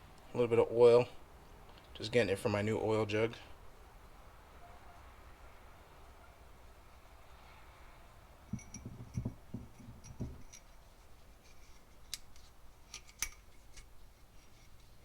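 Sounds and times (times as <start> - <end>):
soft knocks of handled parts: 8.5 - 15.0
sharp small clicks: 12.1 - 13.9.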